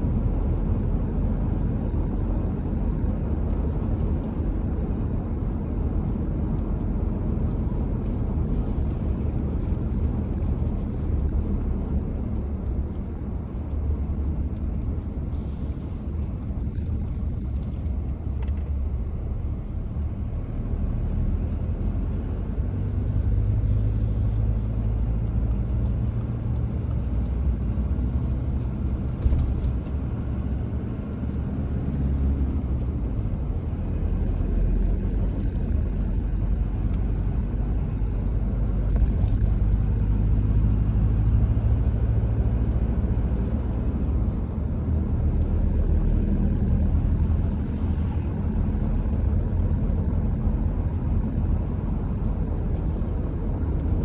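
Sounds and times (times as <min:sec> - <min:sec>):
car driving on road: 0:00.0 - 0:54.0.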